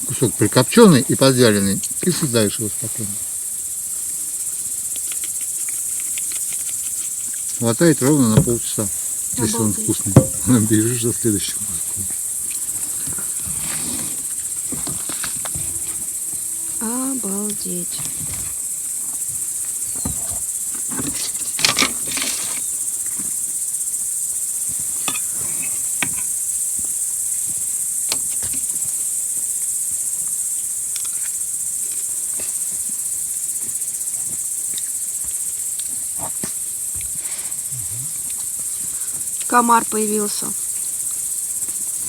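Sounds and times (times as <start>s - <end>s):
crickets chirping: 0.0s - 42.0s
clicks and knocks: 10.1s - 10.8s.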